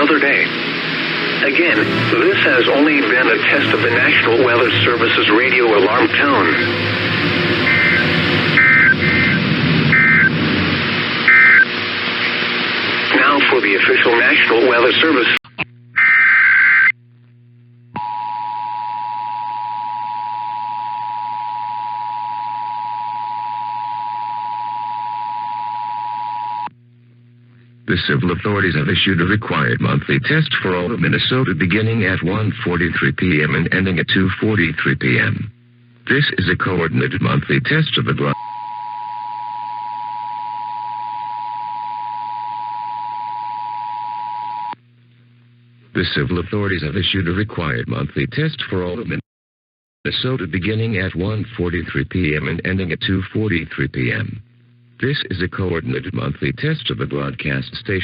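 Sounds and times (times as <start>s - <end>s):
two-tone alert tone: 3.5s - 10.5s.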